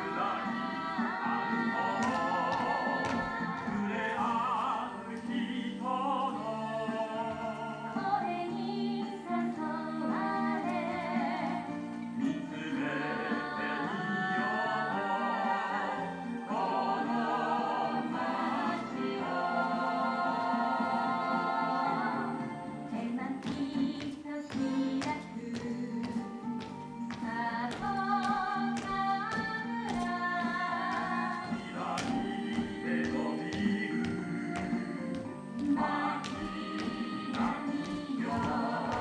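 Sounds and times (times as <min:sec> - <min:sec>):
choir singing with vibrato: 0:00.0 - 0:39.0.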